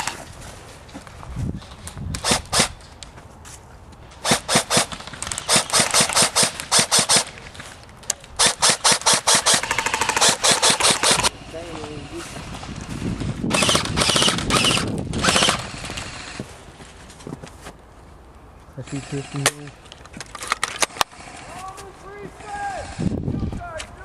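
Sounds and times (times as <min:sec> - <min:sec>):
airsoft guns firing: 0:04.2 - 0:07.4, 0:08.3 - 0:11.3, 0:13.5 - 0:16.3.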